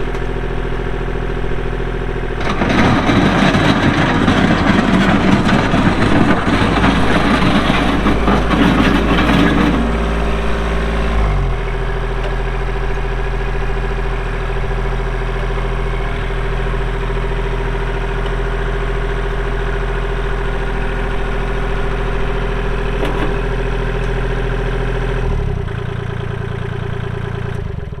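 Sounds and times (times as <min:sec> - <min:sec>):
diesel tractor engine running: 0:00.0 - 0:28.0.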